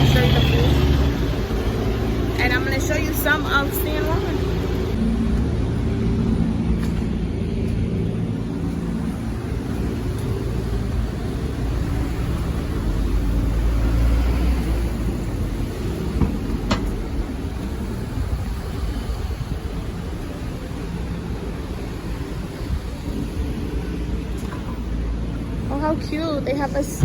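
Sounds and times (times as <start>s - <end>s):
car engine and tyres rumbling: 0.0s - 27.0s.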